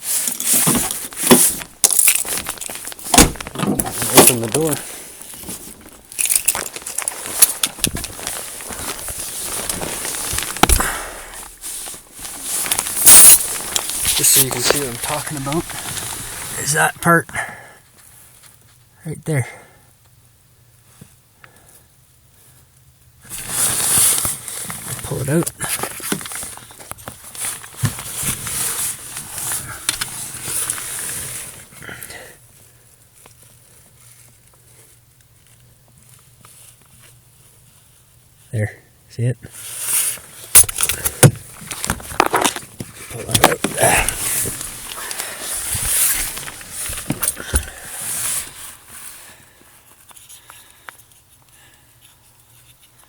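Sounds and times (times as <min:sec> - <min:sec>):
hands rustling and scraping: 0:00.0 - 0:17.0, 0:23.3 - 0:31.8, 0:39.6 - 0:53.0.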